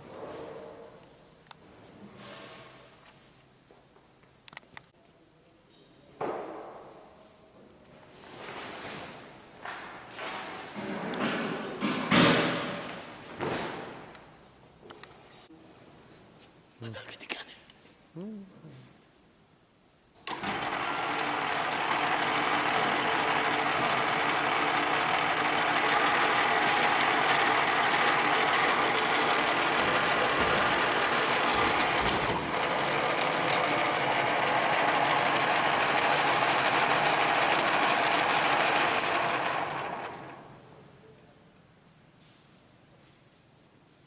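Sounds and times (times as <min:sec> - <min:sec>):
workshop machine humming: 0:20.2 - 0:40.8.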